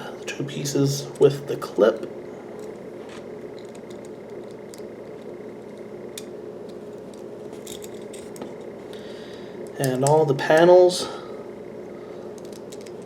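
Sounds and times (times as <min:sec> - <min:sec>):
steady background hum: 0:00.0 - 0:13.0
plastic pieces clicking: 0:12.4 - 0:13.0.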